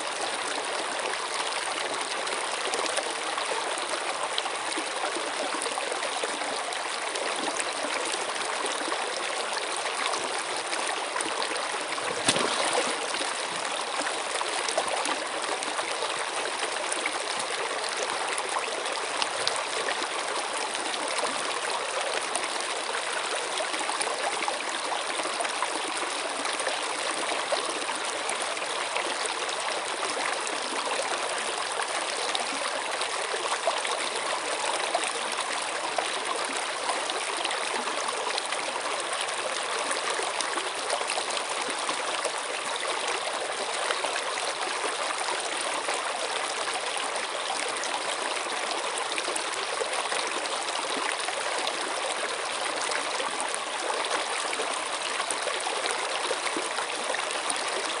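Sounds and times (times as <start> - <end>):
stream water flowing: 0.0 - 58.0
water splashes: 11.8 - 14.1.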